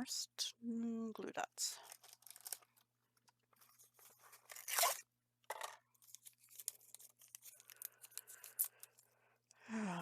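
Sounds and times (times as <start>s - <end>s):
paper rustling: 3.5s - 5.0s, 6.0s - 9.0s
glue dots tearing from roll: 4.5s - 5.0s.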